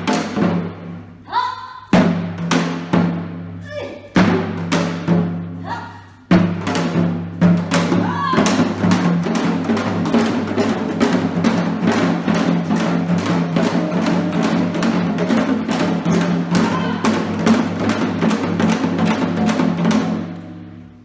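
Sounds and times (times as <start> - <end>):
fast drum strokes: 0.0 - 1.2, 1.9 - 21.0.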